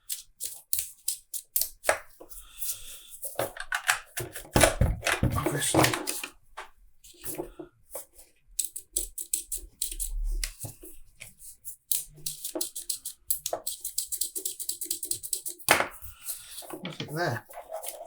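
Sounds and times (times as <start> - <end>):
small parts clicking and rattling: 11.9 - 16.7.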